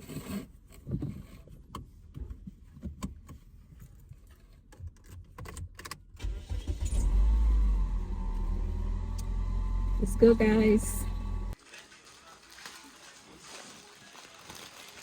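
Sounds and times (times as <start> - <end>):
low rumble: 7.9 - 11.6.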